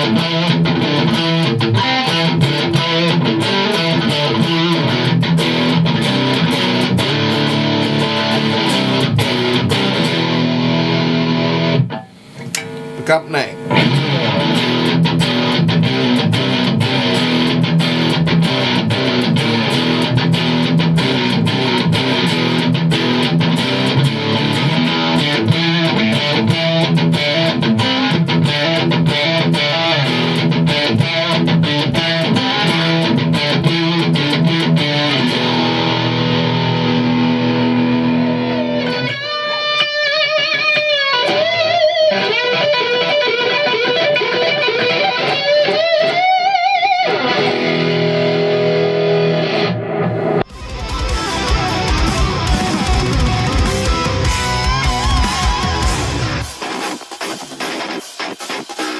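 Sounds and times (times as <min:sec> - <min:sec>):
overdriven electric guitar: 0:00.0 - 0:58.9.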